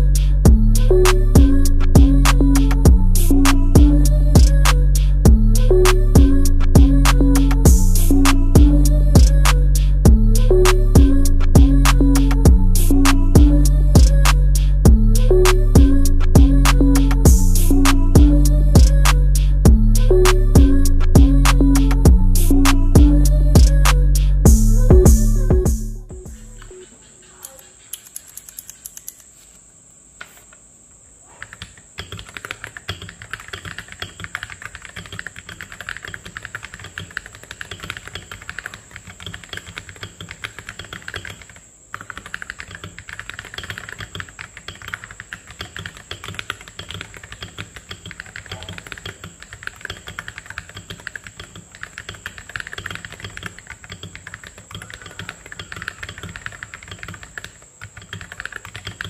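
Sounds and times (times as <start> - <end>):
mechanical keyboard typing: 27.4 - 29.3, 31.4 - 59.0.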